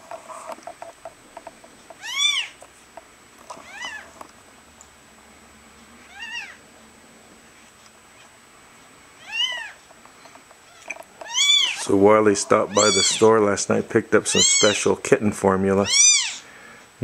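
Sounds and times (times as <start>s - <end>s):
kitten mewing: 2.0s - 2.6s, 6.0s - 6.6s, 9.2s - 9.8s, 10.7s - 11.8s, 12.6s - 13.3s, 14.3s - 14.9s, 15.8s - 16.4s.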